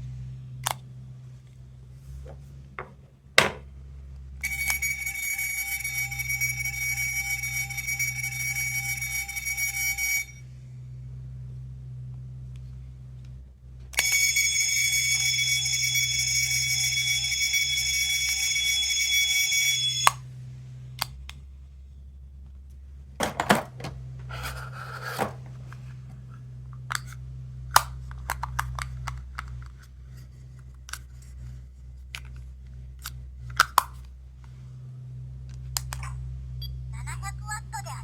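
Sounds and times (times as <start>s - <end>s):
buzzing electronic tone: 4.4s - 10.5s.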